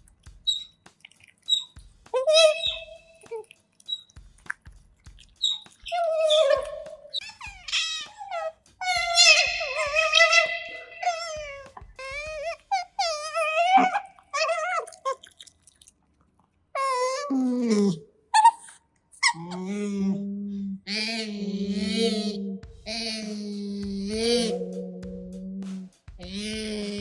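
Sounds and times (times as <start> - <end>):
otters squeaky calls: 0.4 - 4.2, 5.2 - 15.5, 20.9 - 25.6, 26.2 - 27.0
low music hum: 21.5 - 27.0.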